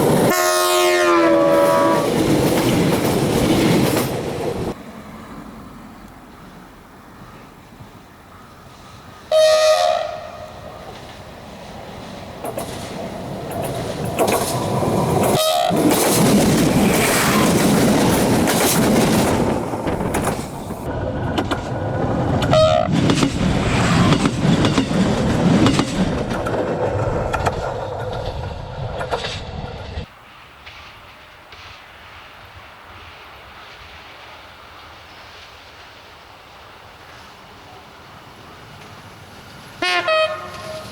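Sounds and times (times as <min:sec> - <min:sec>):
train wheels rumbling on rails: 0:00.0 - 0:40.9
wheels clicking over rail joints: 0:10.4 - 0:31.8.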